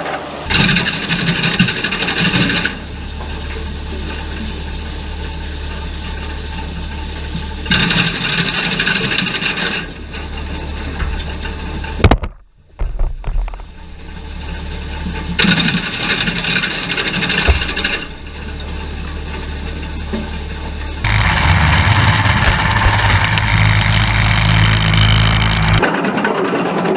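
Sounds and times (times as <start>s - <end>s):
wood chipper running: 0.0s - 12.0s, 12.8s - 26.9s
sharp knock: 17.4s - 18.4s.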